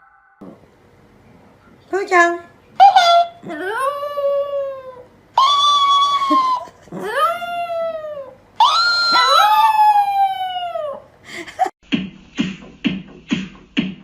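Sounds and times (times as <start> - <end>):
dog howling: 2.8 - 11.1.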